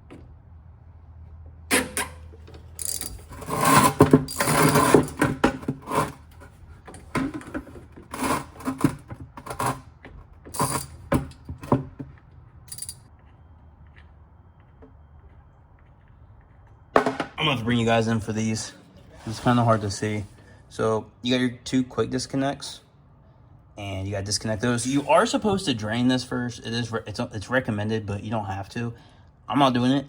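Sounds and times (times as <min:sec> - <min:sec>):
hand tools clinking on metal: 0:02.7 - 0:03.3, 0:12.7 - 0:13.0.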